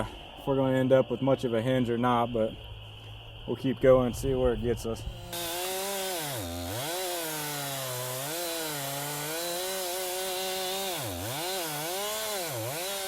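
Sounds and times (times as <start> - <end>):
chainsaw cutting wood: 5.1 - 13.0.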